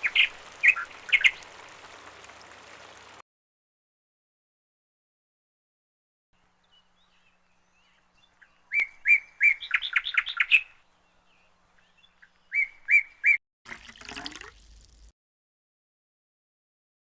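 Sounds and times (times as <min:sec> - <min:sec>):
bird chirping: 0:00.0 - 0:01.8, 0:06.6 - 0:13.4.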